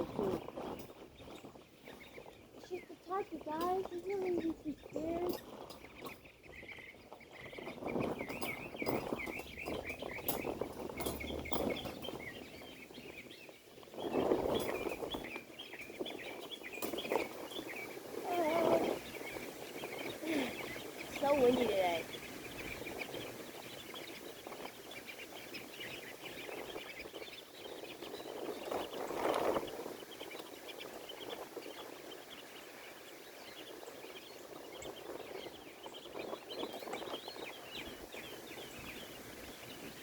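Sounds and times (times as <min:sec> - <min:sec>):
tarp rustling: 0:00.0 - 0:05.7, 0:17.0 - 0:22.0
ducklings peeping: 0:00.0 - 0:40.0
wind buffeting: 0:00.0 - 0:40.0.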